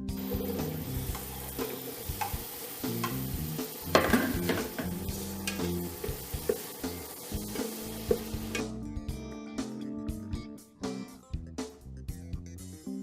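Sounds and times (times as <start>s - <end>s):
food sizzling in a frying pan: 0.2s - 8.7s.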